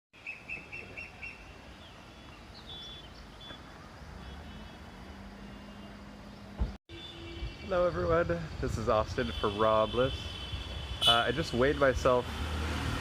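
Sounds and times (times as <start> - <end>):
birds chirping: 0.2 - 6.8.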